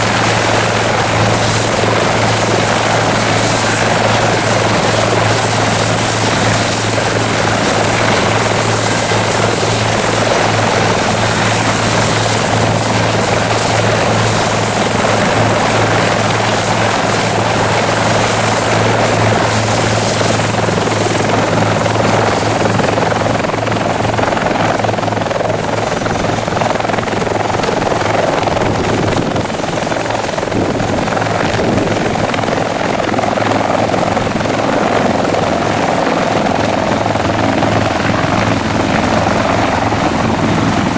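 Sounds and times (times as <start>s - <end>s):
helicopter running: 0.0s - 40.9s.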